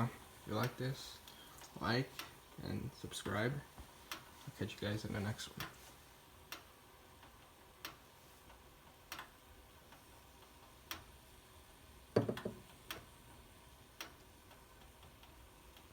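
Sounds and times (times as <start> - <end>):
knocks: 12.2 - 12.6.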